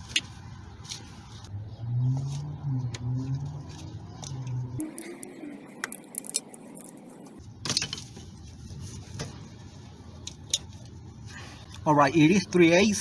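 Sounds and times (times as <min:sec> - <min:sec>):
low hum: 0:01.5 - 0:07.5.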